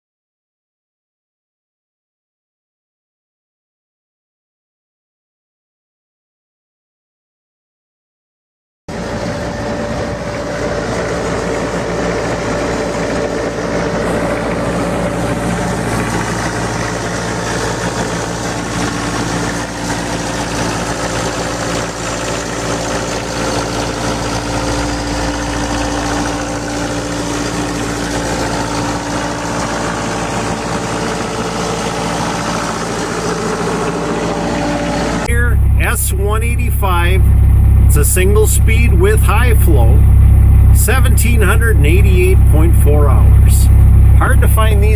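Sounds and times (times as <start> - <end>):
diesel engine idling: 8.9 - 44.9.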